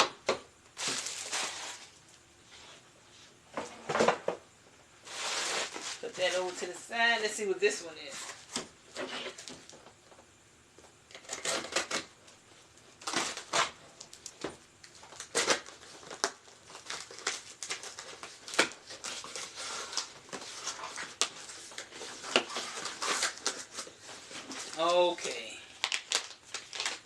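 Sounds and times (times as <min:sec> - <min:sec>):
packaging crinkling and rustling: 0:00.8 - 0:02.2, 0:05.0 - 0:06.8, 0:11.1 - 0:27.0.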